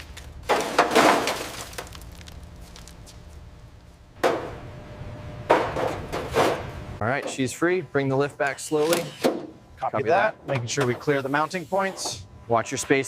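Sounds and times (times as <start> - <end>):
hard debris clattering: 0.4 - 2.4.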